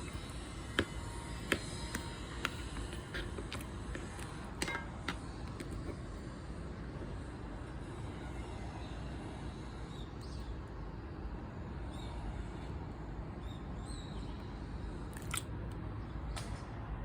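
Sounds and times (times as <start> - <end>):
small squelches: 0.0 - 6.1.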